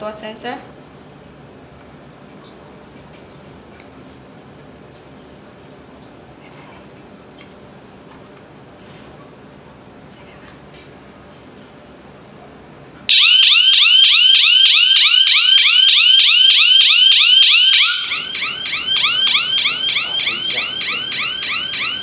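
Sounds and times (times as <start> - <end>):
alarm siren warbling: 13.1 - 22.0.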